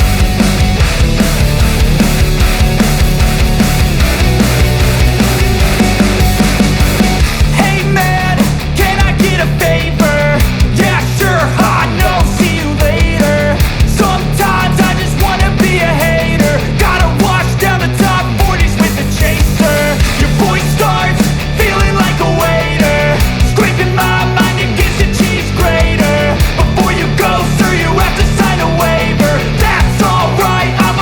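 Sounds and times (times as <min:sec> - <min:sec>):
rock music with driving beat: 0:00.0 - 0:31.0.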